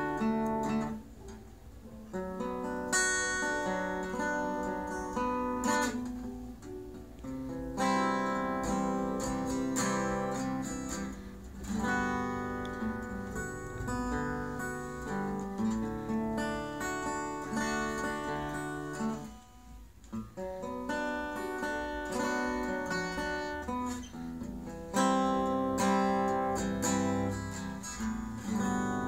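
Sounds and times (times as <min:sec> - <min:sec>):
acoustic guitar strummed: 0:00.0 - 0:29.0.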